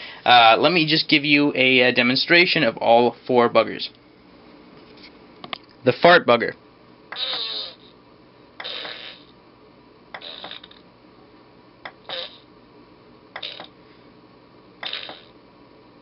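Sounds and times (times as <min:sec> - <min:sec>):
fart sound effects from speaker: 0:07.1 - 0:07.9, 0:08.6 - 0:09.3, 0:10.2 - 0:10.8, 0:11.9 - 0:12.5, 0:13.4 - 0:13.8, 0:14.8 - 0:15.4.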